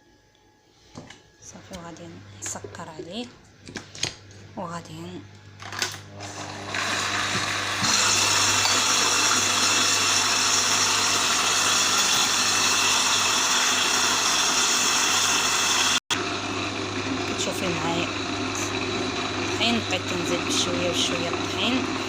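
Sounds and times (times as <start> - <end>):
electric mixer running: 5.8 - 22.0.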